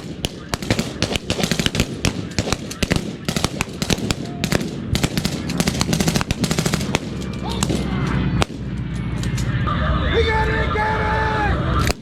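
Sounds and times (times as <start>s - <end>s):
machine-gun fire: 0.0s - 7.8s
guns firing blanks: 0.0s - 9.6s
aircraft engine drone: 0.0s - 12.0s.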